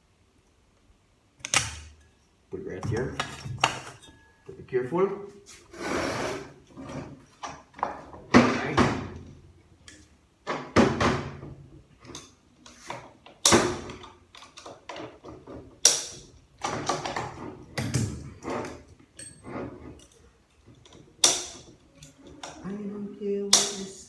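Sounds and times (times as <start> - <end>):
metal parts knocking on a bench: 16.6 - 20.1.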